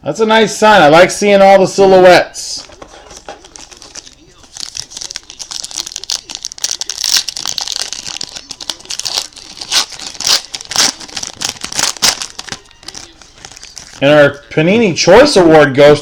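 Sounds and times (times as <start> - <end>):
packaging crinkling and rustling: 2.6 - 14.5.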